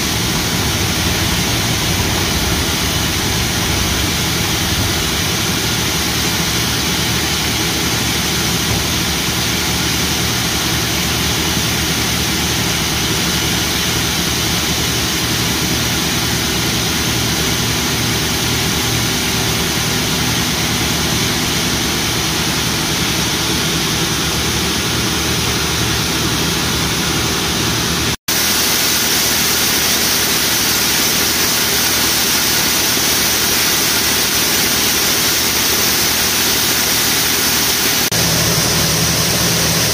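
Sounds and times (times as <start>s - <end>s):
combine harvester running: 0.0s - 39.9s.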